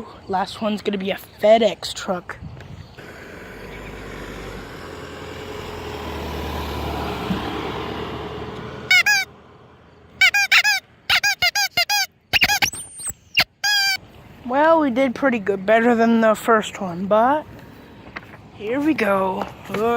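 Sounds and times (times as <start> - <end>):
truck passing: 2.9 - 12.3, 13.0 - 19.9
squeaky handheld horn blasts: 8.9 - 9.3, 10.2 - 14.0.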